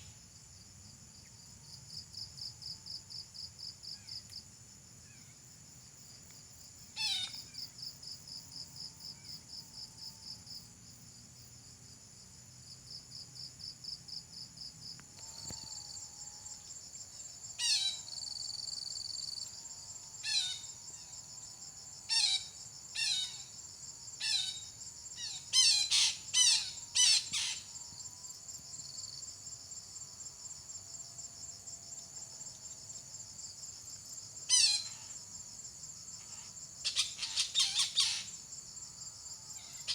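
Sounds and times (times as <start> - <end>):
insects chorus: 0.0 - 39.9.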